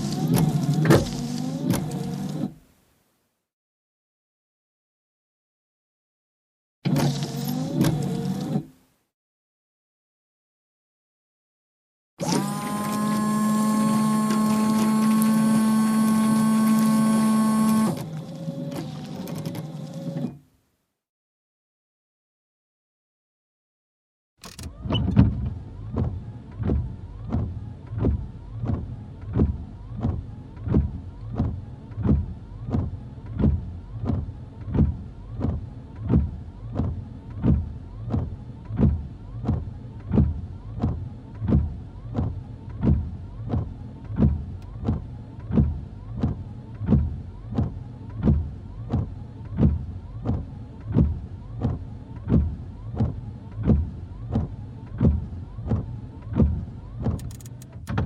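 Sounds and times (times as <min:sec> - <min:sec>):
windshield wipers sweeping: 0:00.0 - 0:02.6, 0:12.2 - 0:20.4, 0:24.7 - 0:58.0
sharp click: 0:57.1 - 0:58.0.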